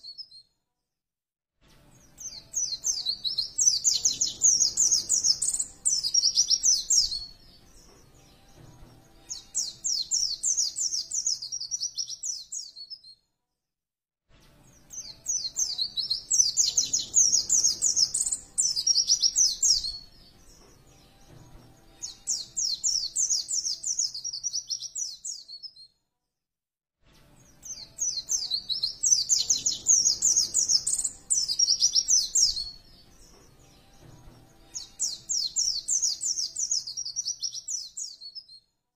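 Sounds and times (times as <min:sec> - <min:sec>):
bird twittering chirps: 0:02.2 - 0:07.3, 0:15.0 - 0:20.1, 0:27.6 - 0:32.8.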